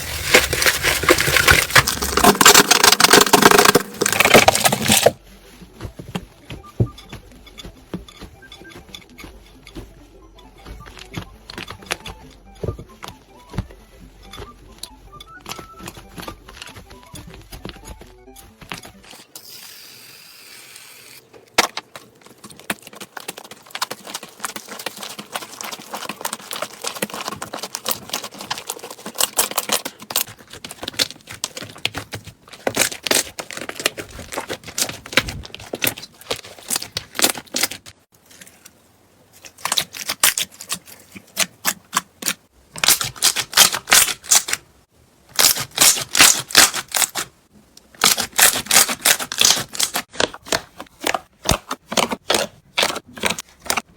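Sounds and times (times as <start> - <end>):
crunchy slime crackling: 0.0 - 5.2, 22.3 - 38.6, 39.3 - 44.6, 45.3 - 47.3, 48.0 - 53.9.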